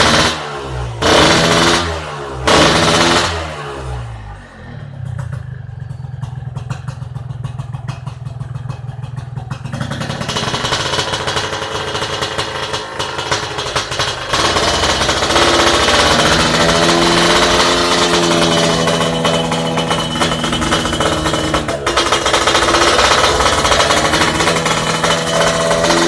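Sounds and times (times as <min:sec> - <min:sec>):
motorcycle engine revving: 0:00.0 - 0:26.0.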